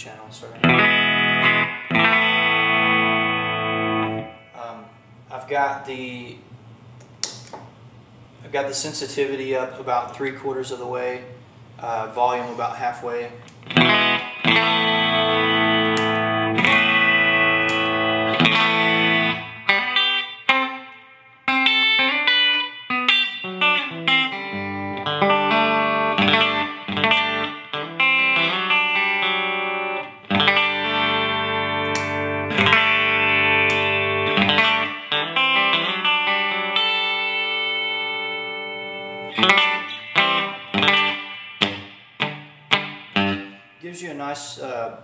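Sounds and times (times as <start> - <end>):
electric guitar chords and notes: 0.0 - 5.2, 13.4 - 43.8.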